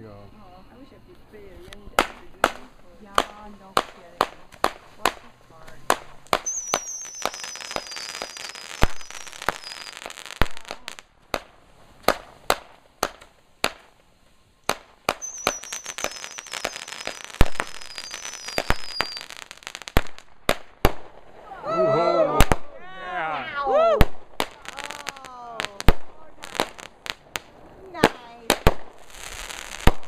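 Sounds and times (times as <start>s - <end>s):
fireworks bangs and crackling: 0.8s - 21.7s, 22.3s - 23.0s, 23.9s - 30.0s
falling firework whistles: 1.9s - 22.6s.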